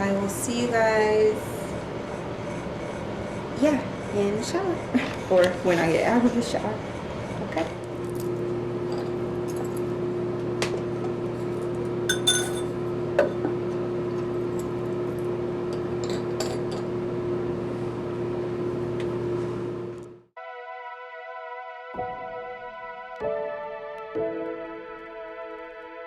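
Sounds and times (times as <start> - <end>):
glass clinks: 12.1 - 12.7
soft electronic music: 20.4 - 26.0.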